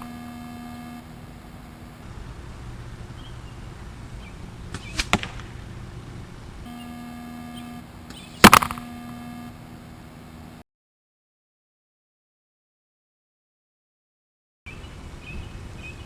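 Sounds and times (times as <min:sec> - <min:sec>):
bow shooting arrow cracks: 0:04.7 - 0:05.6, 0:08.1 - 0:08.8.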